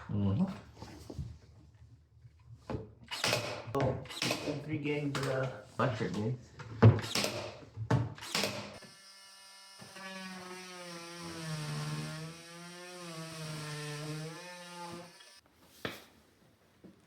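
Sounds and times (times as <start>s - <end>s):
power drill motor running: 8.2s - 15.4s.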